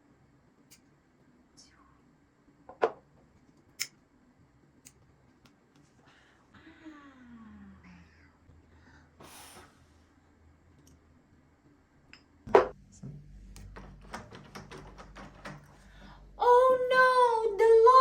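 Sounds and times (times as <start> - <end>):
door handle and lock rattling: 13.6 - 15.9.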